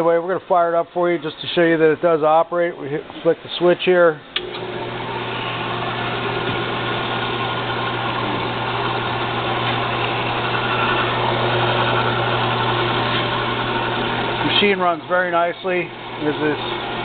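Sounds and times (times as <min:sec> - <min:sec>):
band saw motor hum: 0:04.2 - 0:17.0
saw blade whirring: 0:04.4 - 0:17.0.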